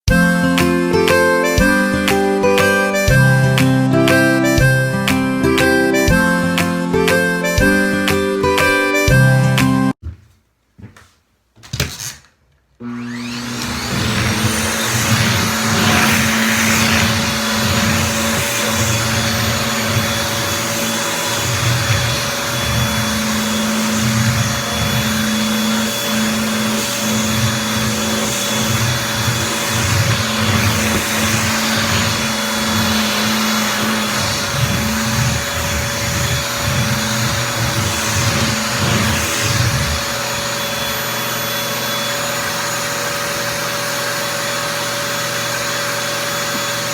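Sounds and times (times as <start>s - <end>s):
vacuum cleaner motor whine: 12.8s - 46.9s.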